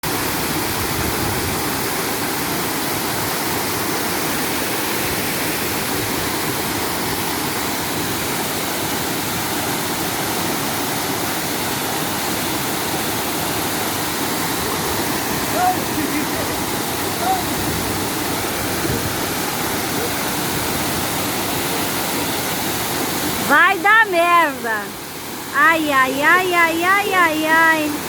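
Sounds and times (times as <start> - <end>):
waterfall rushing: 0.0 - 28.0.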